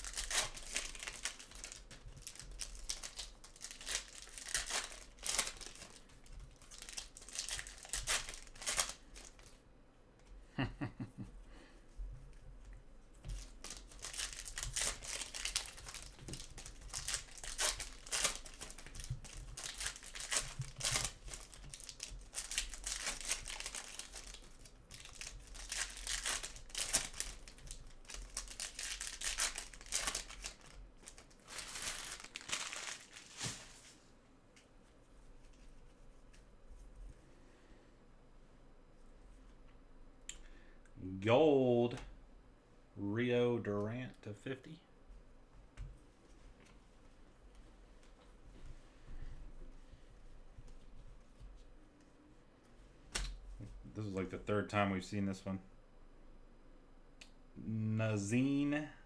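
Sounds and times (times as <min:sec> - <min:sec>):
foil wrappers crinkling and tearing: 0:00.0 - 0:09.6, 0:13.2 - 0:34.0.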